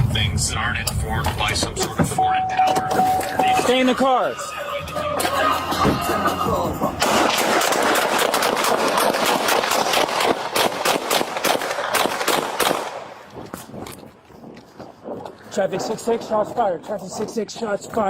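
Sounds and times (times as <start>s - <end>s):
rapid gunfire: 7.0s - 13.2s.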